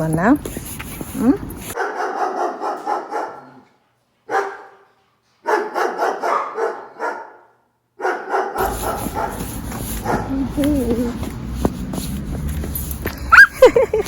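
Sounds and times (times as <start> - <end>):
dog barking: 1.8 - 3.7, 4.3 - 10.6, 13.3 - 13.6.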